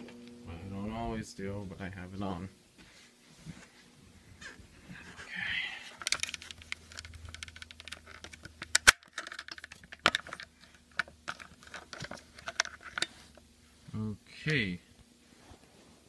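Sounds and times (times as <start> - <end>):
plastic snap: 6.0 - 13.1.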